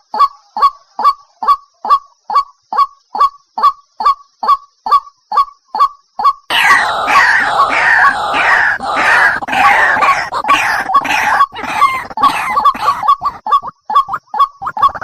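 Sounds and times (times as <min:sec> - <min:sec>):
waterhen calling: 0:06.5 - 0:13.6.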